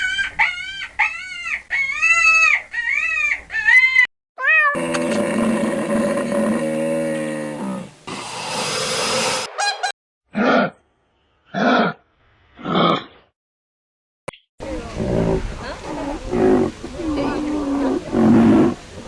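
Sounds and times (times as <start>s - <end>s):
high-pitched farm animal cries: 0.0s - 6.2s
harsh noisy animal call: 0.0s - 9.7s, 14.6s - 19.0s
long low animal call: 14.6s - 19.0s.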